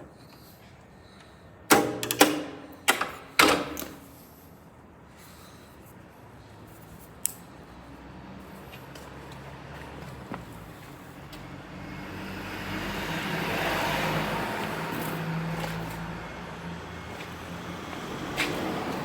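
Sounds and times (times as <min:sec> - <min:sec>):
vehicle passing: 0:07.6 - 0:19.0.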